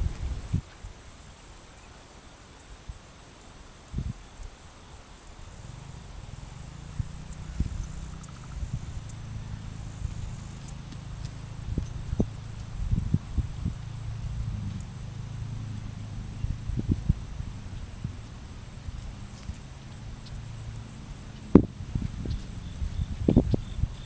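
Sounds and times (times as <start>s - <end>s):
insects chirring: 0.0s - 24.0s
low hum: 5.4s - 24.0s
low thumps: 5.7s - 23.6s.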